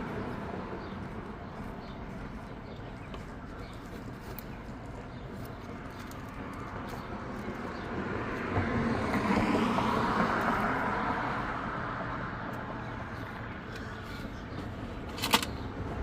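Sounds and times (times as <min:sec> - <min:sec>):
vehicle passing by: 0:06.3 - 0:15.0.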